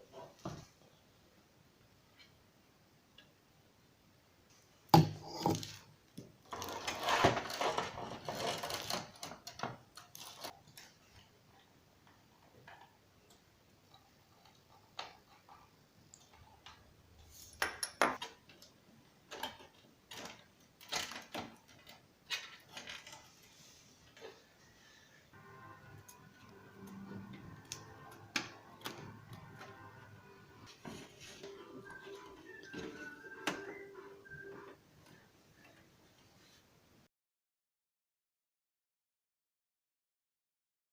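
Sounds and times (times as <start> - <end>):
rustling and scraping: 5.2 - 11.3, 26.0 - 36.7.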